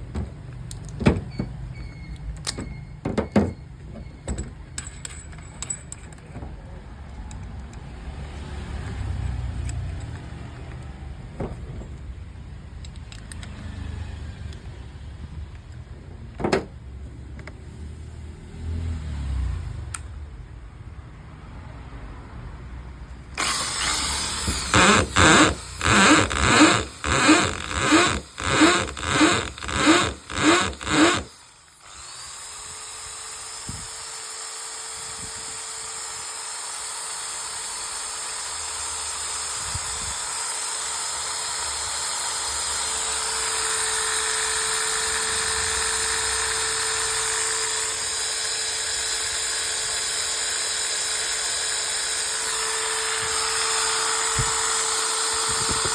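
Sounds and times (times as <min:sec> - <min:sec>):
electric drill whining: 0:23.4 - 0:55.9.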